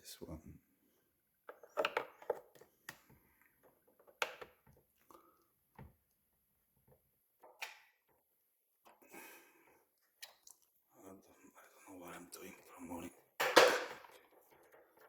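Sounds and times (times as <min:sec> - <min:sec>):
plastic parts clicking and knocking: 0:01.4 - 0:06.2, 0:06.8 - 0:09.1, 0:13.2 - 0:15.0.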